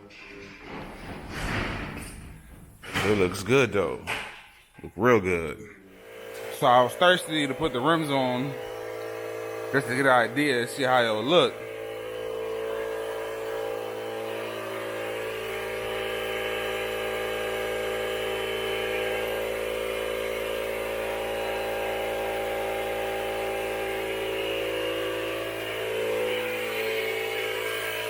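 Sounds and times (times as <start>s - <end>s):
motor droning: 6.0s - 28.0s.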